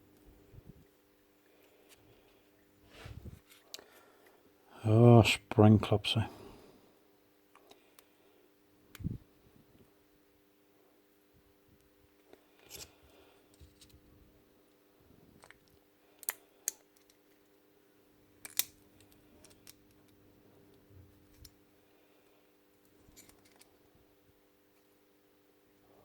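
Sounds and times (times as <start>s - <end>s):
small metal parts clicking: 18.4s - 20.0s, 23.1s - 23.7s.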